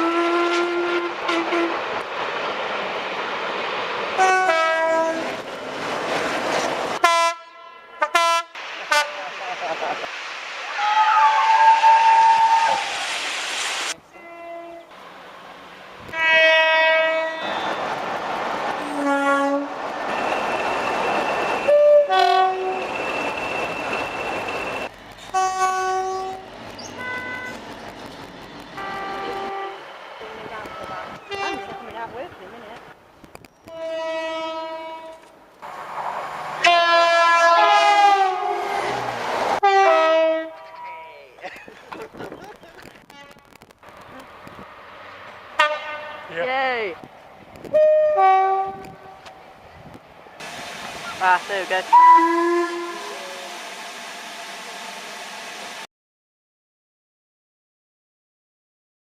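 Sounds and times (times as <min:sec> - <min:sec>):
train horn blasts: 0:00.0 - 0:01.8, 0:04.2 - 0:05.4, 0:07.0 - 0:09.2, 0:14.1 - 0:14.9, 0:16.1 - 0:17.8, 0:18.8 - 0:19.8, 0:21.6 - 0:23.0, 0:25.3 - 0:27.6, 0:28.8 - 0:29.8, 0:31.2 - 0:31.9, 0:33.7 - 0:35.2, 0:36.6 - 0:39.0, 0:39.6 - 0:41.0, 0:45.6 - 0:46.3, 0:47.7 - 0:49.2, 0:51.9 - 0:53.3
train running noise: 0:00.0 - 0:55.9
rushing noise: 0:08.5 - 0:14.2, 0:14.9 - 0:25.4, 0:35.2 - 0:39.6, 0:48.8 - 0:55.9.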